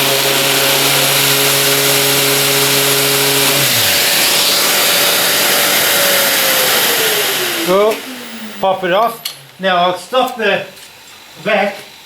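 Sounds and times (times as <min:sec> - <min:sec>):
electric sander whirring: 0:00.0 - 0:09.6.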